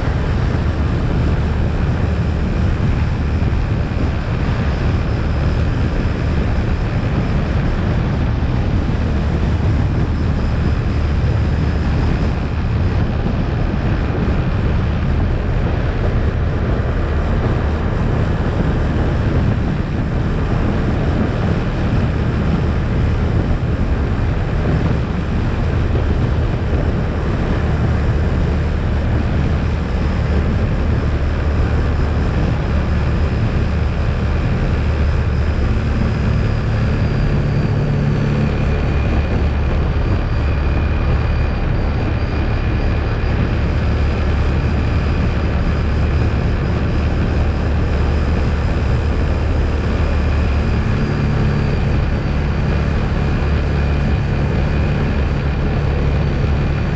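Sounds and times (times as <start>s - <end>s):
atv engine running: 0.0s - 56.9s.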